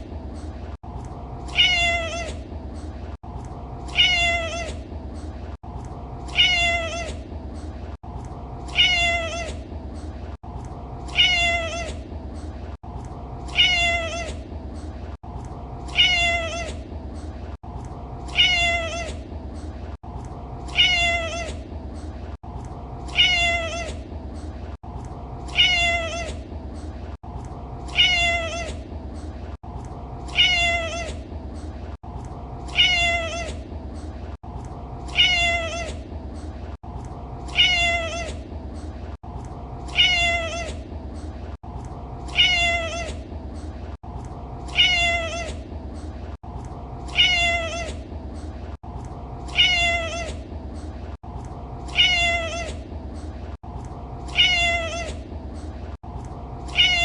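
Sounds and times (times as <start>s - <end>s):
cat meowing: 1.5s - 2.4s, 3.9s - 4.8s, 6.3s - 7.2s, 8.7s - 9.6s, 11.1s - 12.0s, 13.5s - 14.4s, 15.9s - 16.8s, 18.3s - 19.2s, 20.7s - 21.6s, 23.1s - 24.0s, 25.5s - 26.4s, 27.9s - 28.8s, 30.3s - 31.2s, 32.7s - 33.6s, 35.1s - 36.0s, 37.5s - 38.4s, 39.9s - 40.8s, 42.3s - 43.2s, 44.7s - 45.6s, 47.1s - 48.0s, 49.5s - 50.4s, 51.9s - 52.8s, 54.3s - 55.2s, 56.7s - 57.0s.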